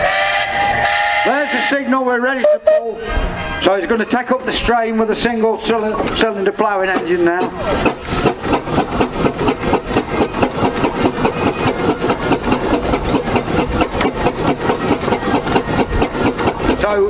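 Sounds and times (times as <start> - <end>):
steam engine exhaust beating: 0.0 - 17.0.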